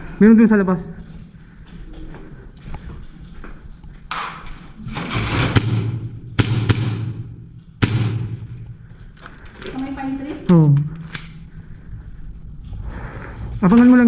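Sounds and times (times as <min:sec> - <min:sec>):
low steady hum: 0:00.0 - 0:14.0
sharp knocks: 0:05.2 - 0:08.8.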